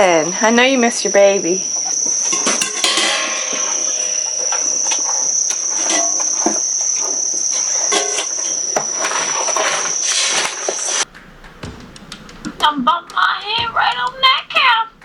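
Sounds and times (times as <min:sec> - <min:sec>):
insect chorus: 0:00.0 - 0:11.0.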